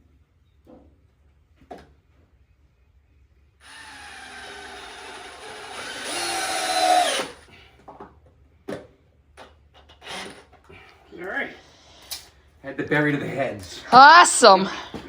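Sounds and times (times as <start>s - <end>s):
power drill driving screw into wood: 3.6s - 7.5s, 9.9s - 10.6s.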